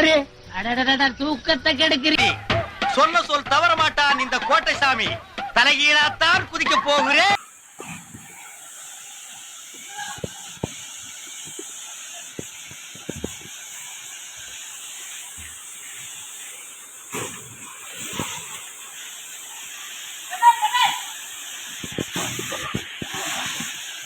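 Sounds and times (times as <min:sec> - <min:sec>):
waterfall rushing: 0:07.0 - 0:24.0.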